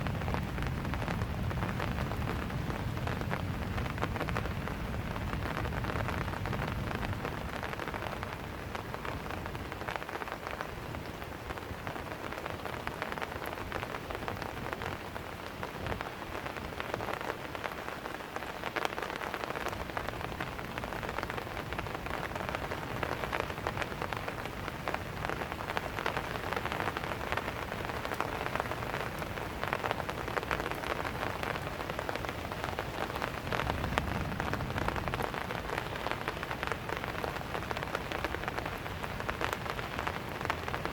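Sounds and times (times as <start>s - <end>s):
rain pattering on surfaces: 0.0s - 40.9s.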